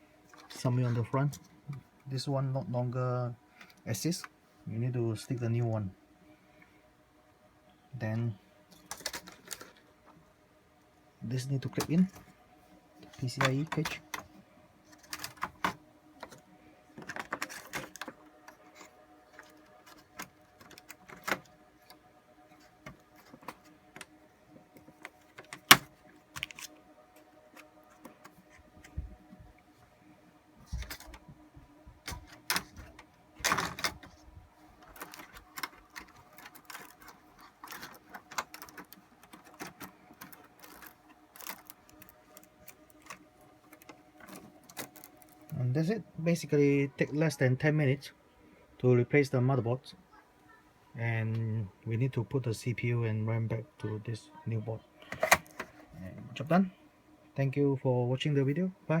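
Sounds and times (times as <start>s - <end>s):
faint steady hum: 0.0s - 59.0s
metal and plastic parts clicking: 8.8s - 9.8s, 17.0s - 22.0s, 32.0s - 34.2s, 34.8s - 45.6s, 55.0s - 55.8s.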